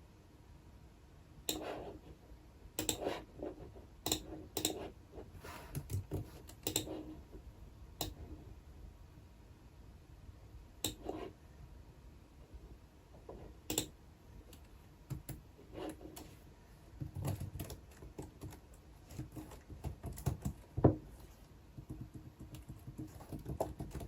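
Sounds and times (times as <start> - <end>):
typing on keyboard: 17.0 - 20.7, 21.8 - 24.0.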